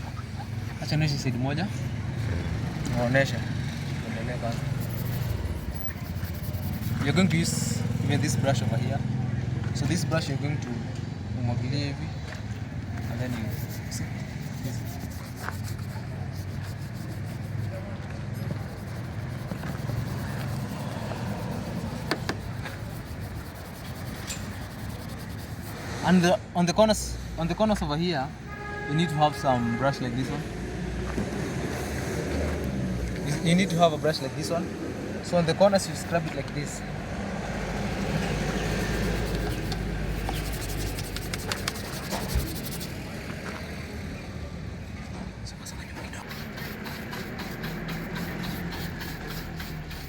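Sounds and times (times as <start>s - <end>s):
brush scrubbing wet glass: 4.7s - 7.8s, 13.0s - 26.2s, 38.5s - 43.1s, 46.2s - 50.0s.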